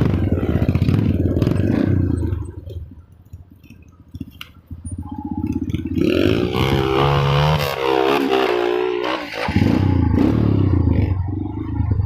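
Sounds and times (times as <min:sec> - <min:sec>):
motorcycle engine running: 0:00.0 - 0:03.1.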